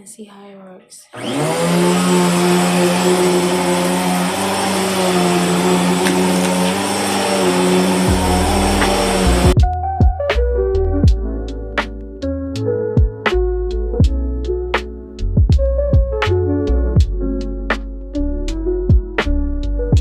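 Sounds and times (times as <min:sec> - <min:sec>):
vacuum cleaner motor whine: 0:01.2 - 0:09.6.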